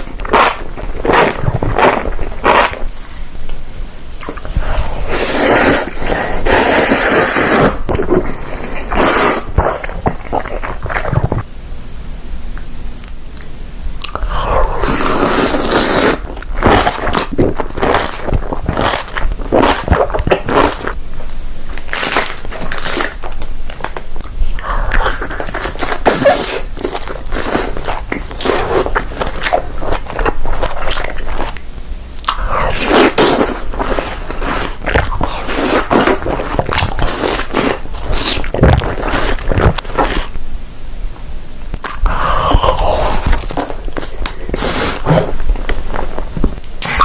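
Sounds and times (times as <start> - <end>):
wet chewing: 0.0 - 11.5, 13.0 - 21.0, 21.7 - 31.6, 32.2 - 40.4
wet slurping: 4.2 - 11.4, 14.0 - 21.0, 24.5 - 31.6, 32.2 - 40.4, 41.8 - 46.2, 46.8 - 47.0.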